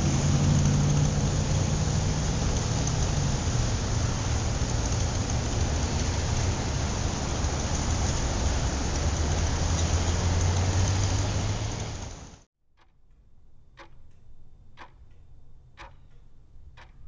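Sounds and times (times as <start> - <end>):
constant rushing noise: 0.0 - 12.4
vehicle engine hum: 0.0 - 17.0.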